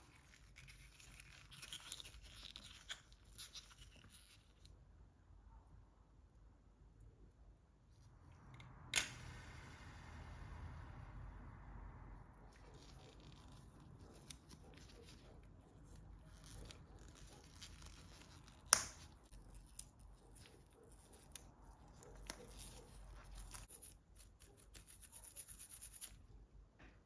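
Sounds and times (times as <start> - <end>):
hands rubbing and scratching: 12.6 - 26.2.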